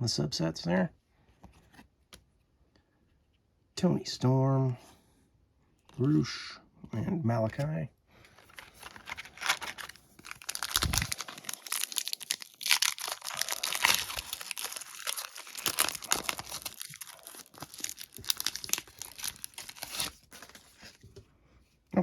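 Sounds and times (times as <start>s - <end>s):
wrapper tearing and crinkling: 8.4s - 21.0s.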